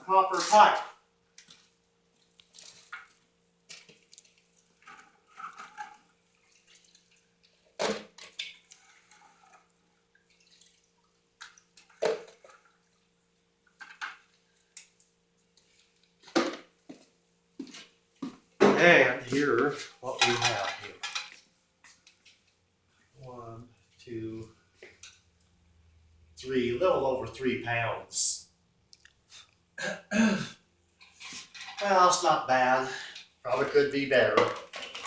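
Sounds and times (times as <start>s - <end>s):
faint steady hum: 0.0s - 35.0s
metal pieces clinking: 34.4s - 35.0s.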